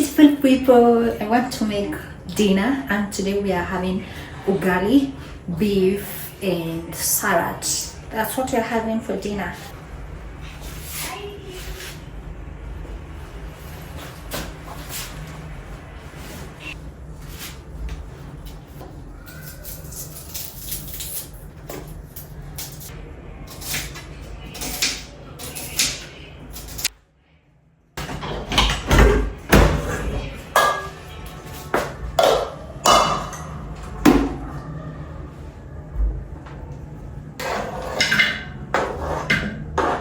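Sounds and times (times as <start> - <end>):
pots and dishes clattering: 28.0 - 34.4, 37.4 - 40.0.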